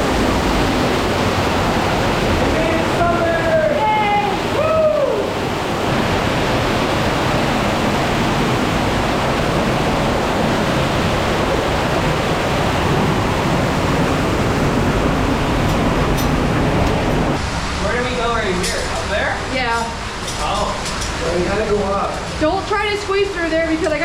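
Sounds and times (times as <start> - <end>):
waterfall rushing: 0.0 - 23.5.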